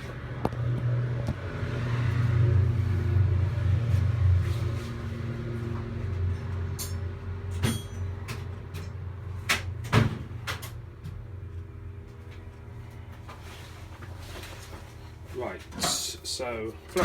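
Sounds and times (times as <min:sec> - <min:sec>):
tools and metal parts clinking: 0:06.7 - 0:08.2.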